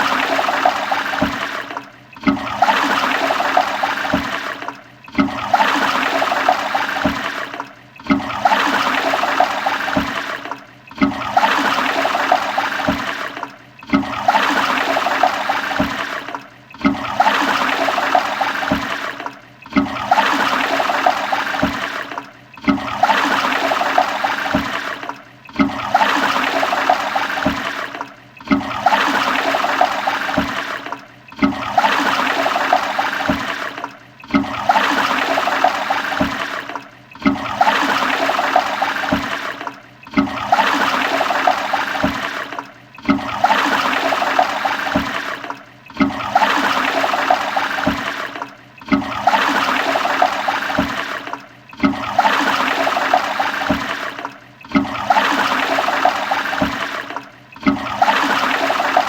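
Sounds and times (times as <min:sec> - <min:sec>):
toilet flushing: 0:00.0 - 0:59.0.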